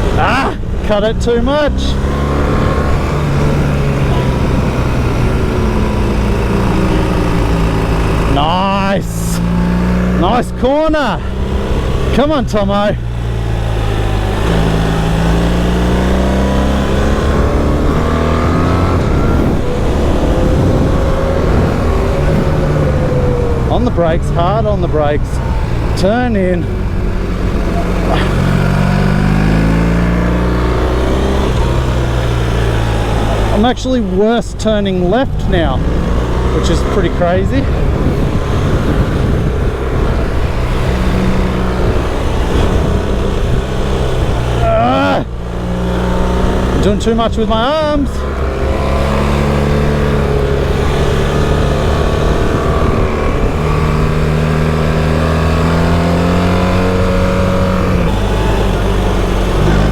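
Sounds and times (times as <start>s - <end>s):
motorcycle engine accelerating: 0.0s - 59.9s
wind and road noise: 0.0s - 59.9s.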